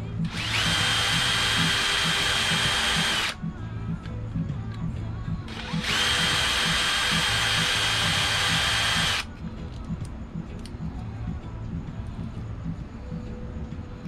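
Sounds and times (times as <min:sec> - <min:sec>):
background music with steady beat: 0:00.0 - 0:14.0
power tool whirring: 0:00.2 - 0:03.4, 0:05.5 - 0:09.3.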